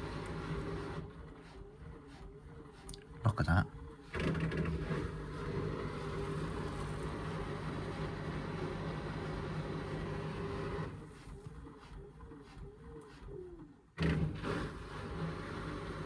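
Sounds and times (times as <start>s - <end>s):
washing machine spinning: 4.0s - 11.2s.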